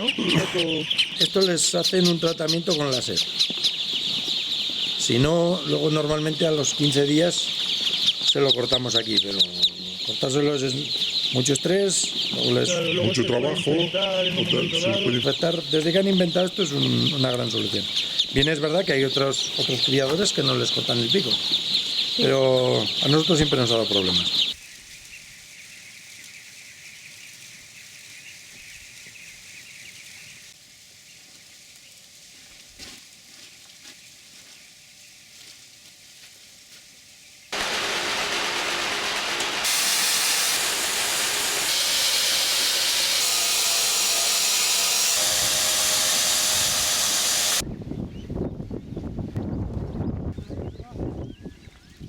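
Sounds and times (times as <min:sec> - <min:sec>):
loud steady hiss: 0:37.5 - 0:47.6.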